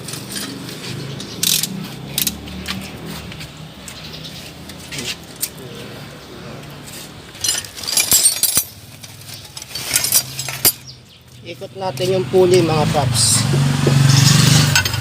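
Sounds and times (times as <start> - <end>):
metal hand tools clinking: 7.4 - 11.0.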